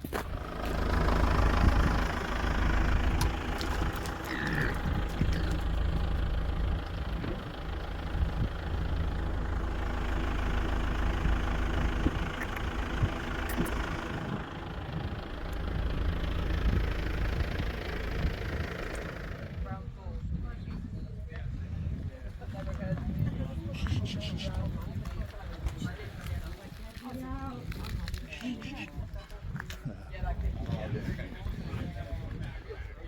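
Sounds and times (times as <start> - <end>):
vehicle engine running: 0.0 - 20.2.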